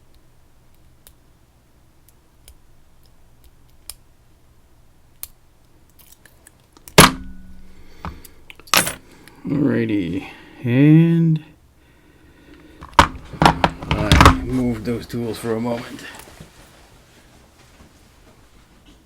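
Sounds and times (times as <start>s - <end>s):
hard objects knocking on bench: 12.9s - 14.5s.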